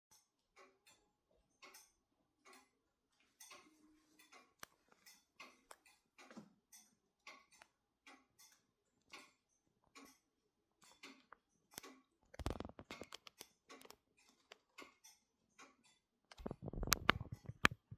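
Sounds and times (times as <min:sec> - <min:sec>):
clock ticking: 0:16.4 - 0:17.9.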